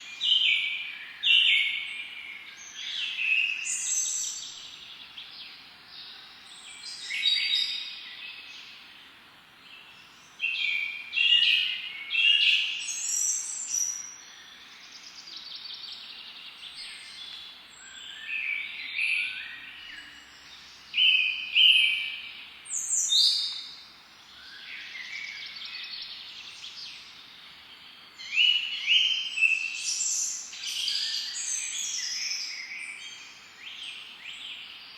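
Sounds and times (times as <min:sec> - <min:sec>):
faint background hiss: 0:00.0 - 0:34.9
songbirds singing and chirping: 0:00.0 - 0:34.9.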